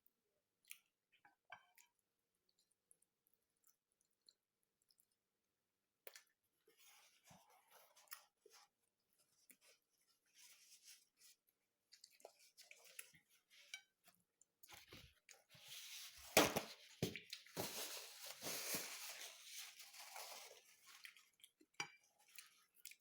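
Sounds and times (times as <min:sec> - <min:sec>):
tearing rustling noise: 0:15.6 - 0:21.0.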